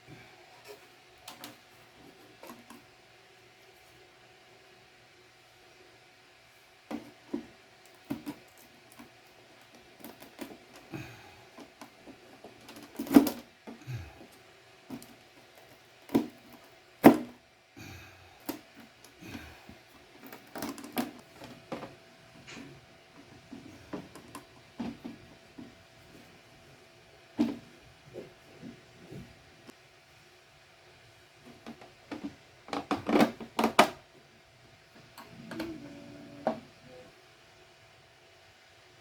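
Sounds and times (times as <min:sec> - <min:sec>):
faint steady hum: 0:00.0 - 0:39.0
plastic parts clicking and knocking: 0:00.6 - 0:02.8, 0:06.9 - 0:17.4, 0:20.0 - 0:25.8, 0:31.5 - 0:34.1.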